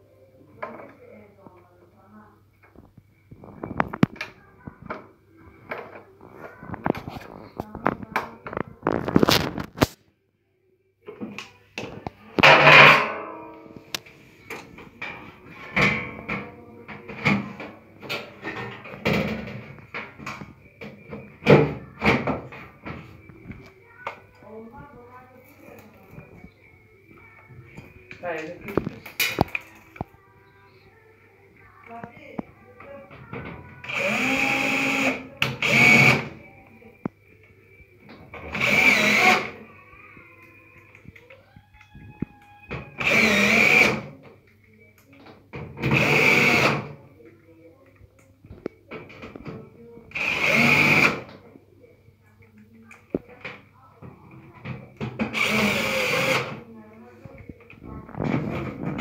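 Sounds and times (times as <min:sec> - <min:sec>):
background music with held tones: 0:00.0 - 0:52.7
power drill whining: 0:33.8 - 0:36.3, 0:38.4 - 0:39.6, 0:42.7 - 0:44.0, 0:45.9 - 0:46.8, 0:50.1 - 0:51.2, 0:55.3 - 0:56.6.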